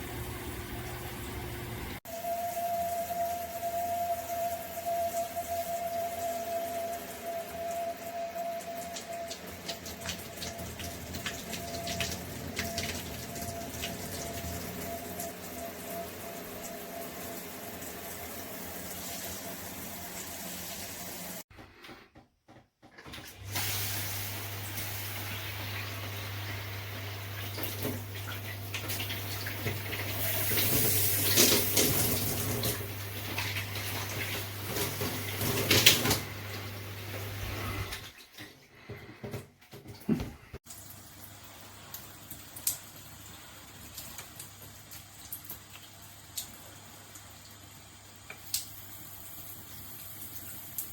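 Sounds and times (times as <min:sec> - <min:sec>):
water spraying from shower head: 0:02.0 - 0:21.4, 0:23.5 - 0:38.0.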